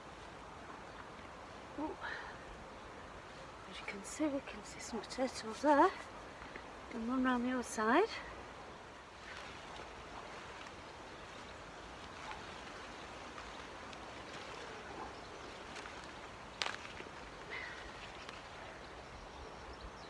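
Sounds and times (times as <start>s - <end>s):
hands rustling through soil: 9.2s - 19.0s.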